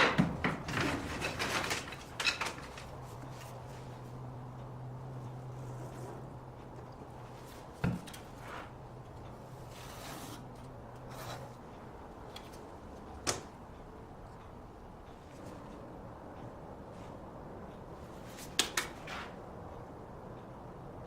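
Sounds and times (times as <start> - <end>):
light rubbing and scraping: 5.3 - 8.8.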